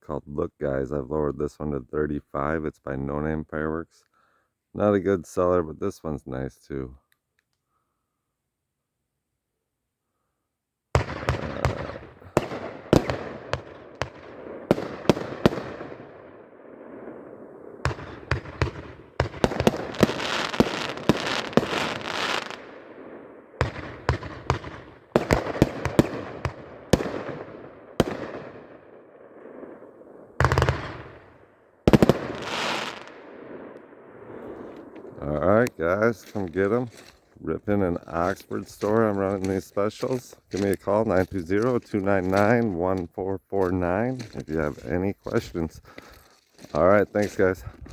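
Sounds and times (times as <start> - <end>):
firework shots and reports: 11.0 - 43.1.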